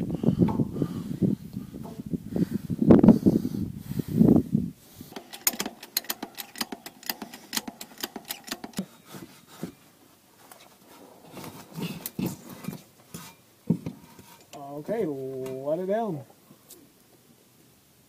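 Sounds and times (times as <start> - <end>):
sharp clicks: 5.1 - 8.9.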